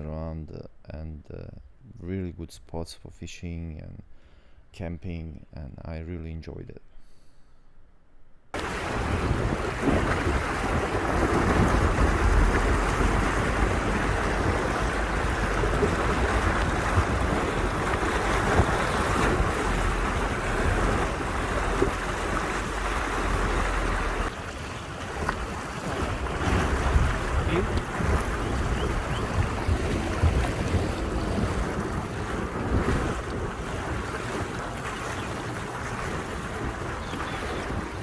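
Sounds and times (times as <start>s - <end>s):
wind buffeting microphone: 8.6s - 38.0s.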